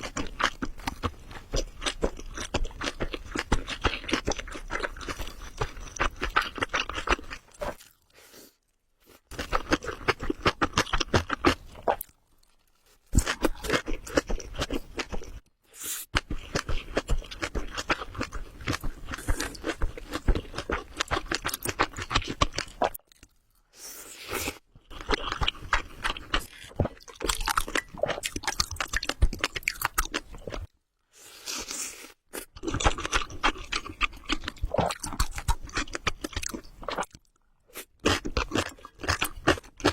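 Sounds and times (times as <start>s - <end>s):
wet crunchy chewing: 0.0s - 8.0s, 16.2s - 23.3s, 24.5s - 30.7s, 32.3s - 39.9s.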